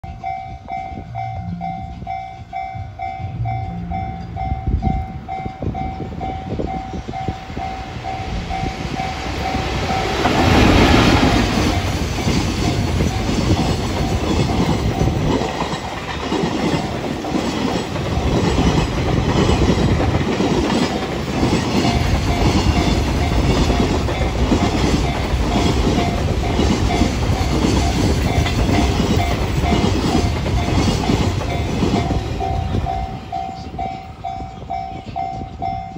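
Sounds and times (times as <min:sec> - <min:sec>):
level-crossing bell ringing: 0:00.0 - 0:10.2, 0:27.8 - 0:35.9
train wheels clacking over rails: 0:02.0 - 0:35.9.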